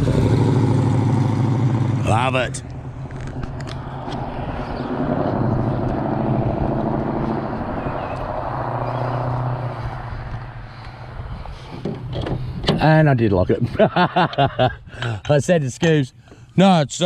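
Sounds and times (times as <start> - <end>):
car engine droning: 0.0 - 12.8.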